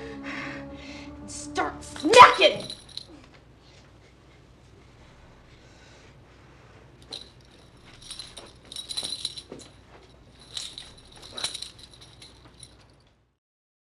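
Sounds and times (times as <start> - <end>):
metallic jingling and rattling: 2.1 - 3.1, 7.0 - 13.1.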